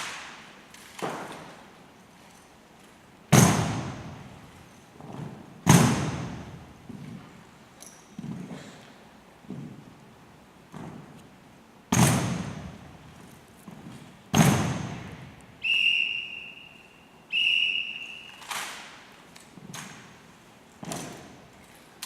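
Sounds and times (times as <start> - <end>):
whistle blasts: 15.6 - 18.6.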